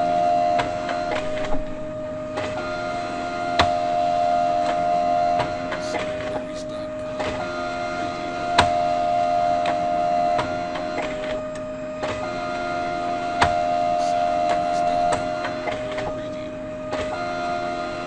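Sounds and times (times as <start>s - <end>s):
photocopier humming: 0.0s - 18.0s.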